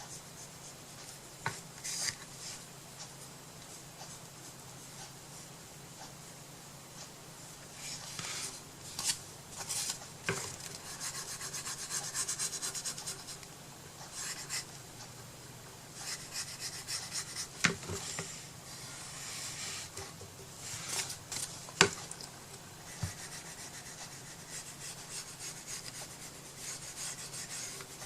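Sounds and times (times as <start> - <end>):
rubbing strokes on wood: 10.8 - 13.4, 22.9 - 28.0.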